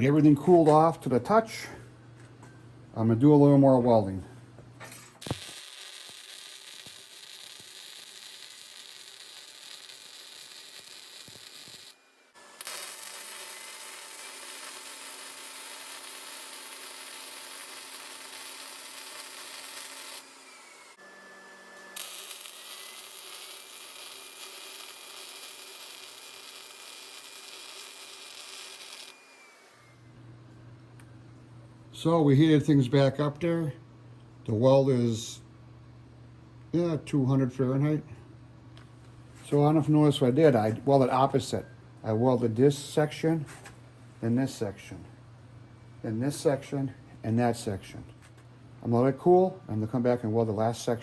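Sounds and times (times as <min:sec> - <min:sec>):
welding arc hissing: 0:05.2 - 0:21.0, 0:21.9 - 0:29.9.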